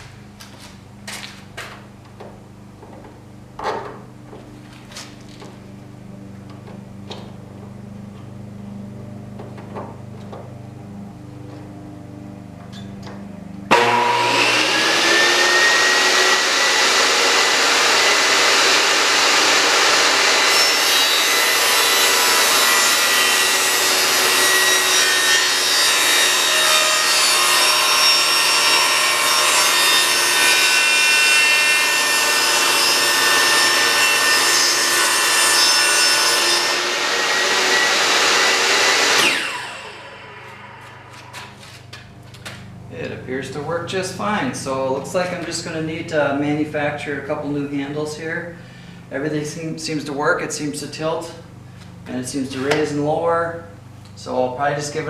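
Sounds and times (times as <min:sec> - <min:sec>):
table saw motor whining: 0:13.7 - 0:41.9.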